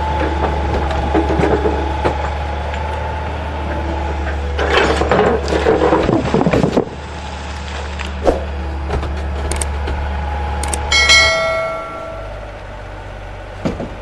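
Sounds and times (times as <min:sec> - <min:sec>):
heavy machine engine humming: 0:00.0 - 0:14.0.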